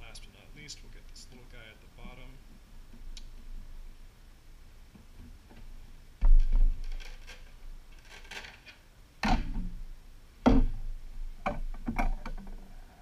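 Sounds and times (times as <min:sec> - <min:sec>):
sharp knocks and thuds: 0:05.5 - 0:07.0, 0:09.2 - 0:09.8, 0:10.4 - 0:12.6.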